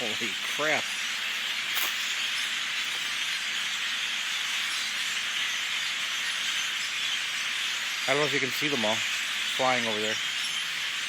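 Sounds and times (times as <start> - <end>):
flock of birds calling: 0.0 - 11.0.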